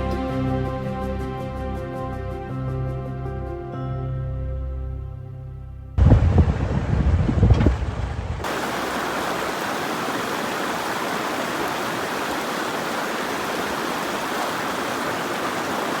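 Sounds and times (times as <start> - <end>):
loud low-pitched sound: 6.0 - 8.4
mountain stream rushing: 6.0 - 16.0.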